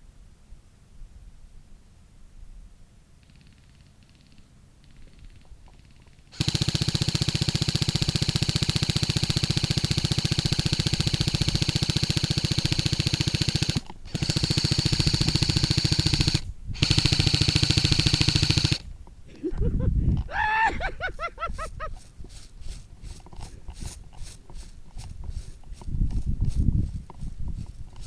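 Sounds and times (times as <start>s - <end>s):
airsoft gun automatic fire: 3.2s - 18.9s.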